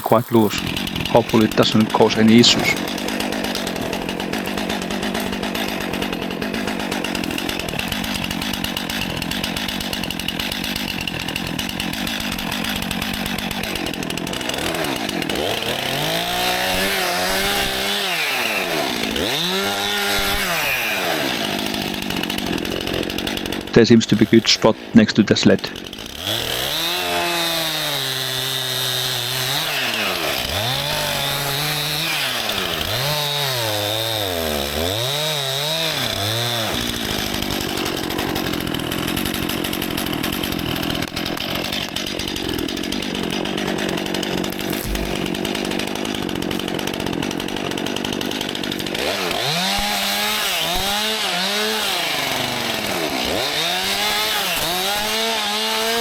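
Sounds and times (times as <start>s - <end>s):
chainsaw cutting wood: 0.0s - 56.0s
chainsaw revving: 0.0s - 56.0s.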